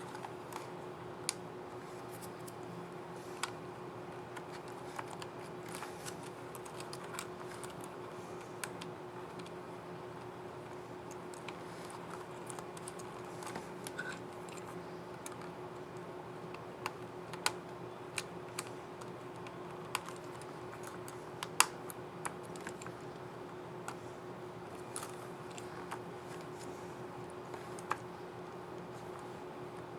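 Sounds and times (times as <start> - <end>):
faint steady hum: 0.0 - 29.9
laptop keyboard keys clicking: 4.3 - 9.6, 11.1 - 15.6, 16.5 - 23.2.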